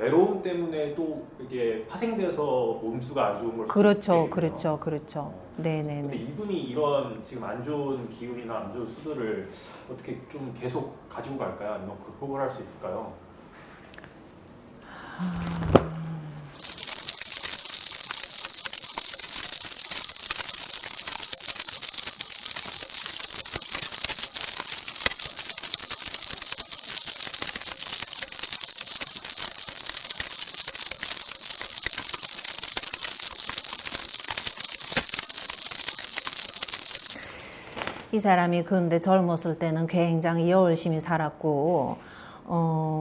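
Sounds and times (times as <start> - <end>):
shaman's bells jingling: 16.5 - 38.2.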